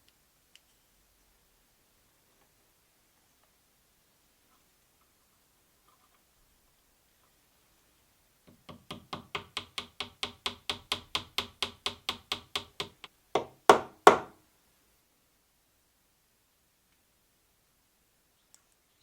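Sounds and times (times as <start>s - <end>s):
hand tool tapping on wood: 8.5s - 14.4s.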